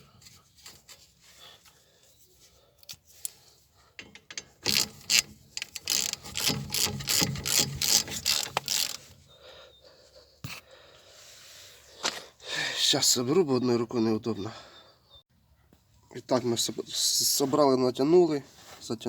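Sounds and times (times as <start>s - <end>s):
ratchet wrench clicking: 4.0s - 9.0s.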